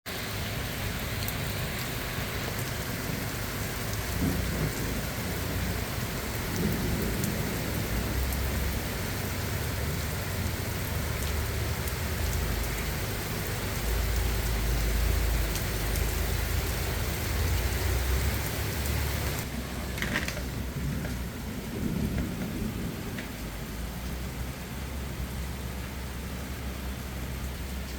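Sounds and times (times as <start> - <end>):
steady rain falling: 0.1 - 27.9
rain drop ticks: 1.0 - 24.3, 27.2 - 27.9
low rumble: 19.4 - 25.6.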